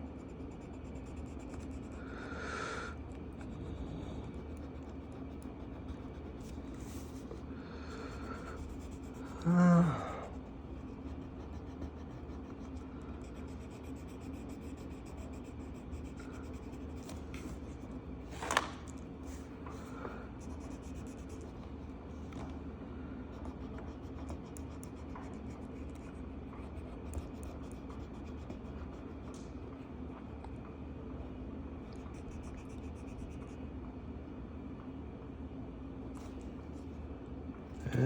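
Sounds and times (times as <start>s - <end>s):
marker scratching on paper: 0.0s - 2.0s, 4.2s - 9.4s, 10.7s - 17.9s, 20.4s - 21.8s, 23.4s - 29.3s
steady low hum: 0.0s - 38.0s.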